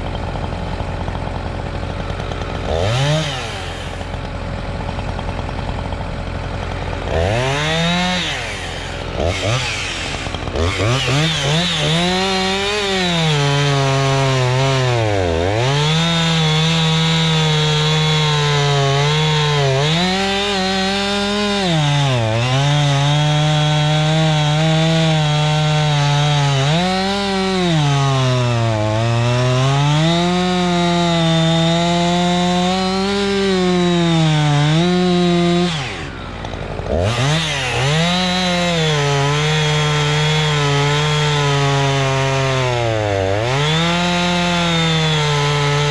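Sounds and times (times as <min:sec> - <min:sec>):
chainsaw cutting logs: 0:00.0 - 0:45.9.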